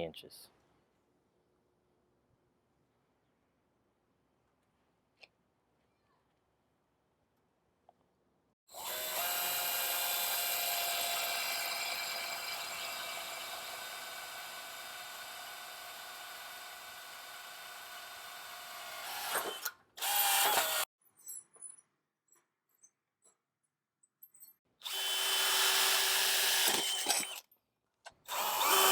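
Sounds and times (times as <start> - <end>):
power drill running: 8.7 - 20.9, 24.8 - 27.4, 28.3 - 28.9.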